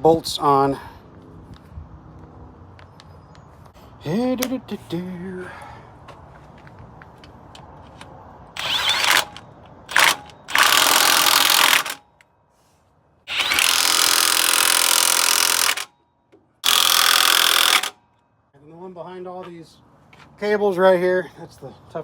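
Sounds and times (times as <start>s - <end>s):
impact wrench bursts: 8.6s - 12.0s, 13.3s - 15.9s, 16.6s - 18.0s.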